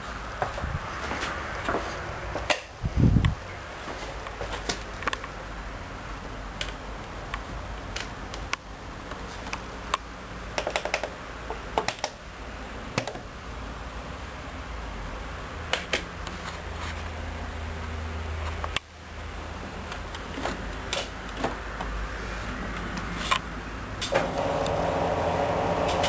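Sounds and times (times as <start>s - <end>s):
washing machine hum: 23.9s - 26.0s.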